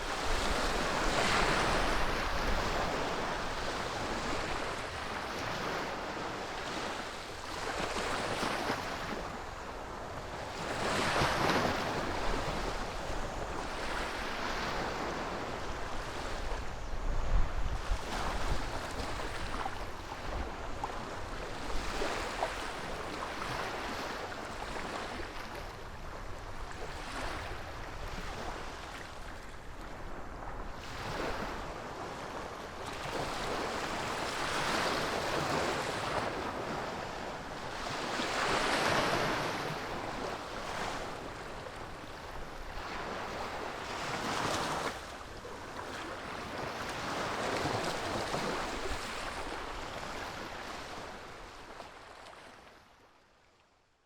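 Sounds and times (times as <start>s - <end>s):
wind blowing over microphone: 0.0s - 7.2s, 7.9s - 23.9s
waves washing ashore: 0.0s - 52.9s.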